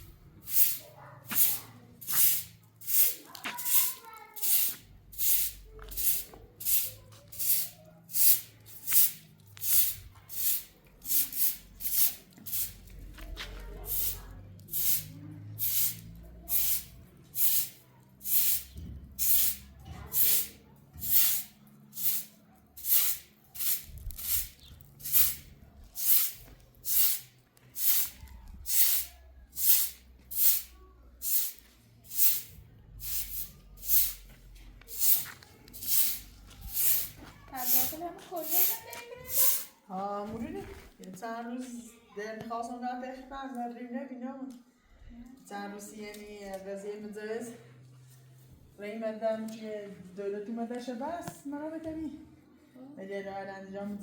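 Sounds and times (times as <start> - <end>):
broom sweeping: 0.0 - 39.8.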